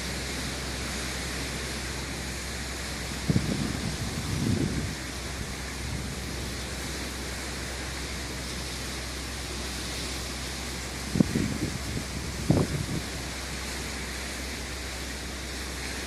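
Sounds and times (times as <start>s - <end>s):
sea waves rushing: 0.0s - 16.0s
wind buffeting microphone: 3.1s - 6.8s, 11.0s - 13.4s.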